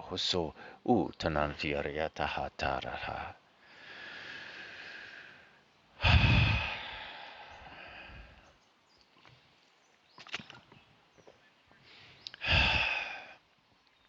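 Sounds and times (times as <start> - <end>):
man's breathy exhale: 3.6 - 8.4, 11.8 - 13.4
faint mouth clicks: 12.2 - 12.4.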